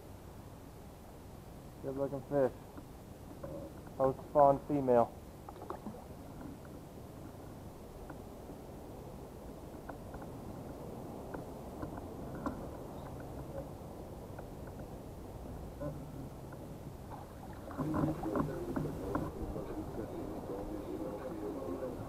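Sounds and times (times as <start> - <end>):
small knocks and taps: 11.3 - 13.7
water washing against hull: 17.0 - 21.6.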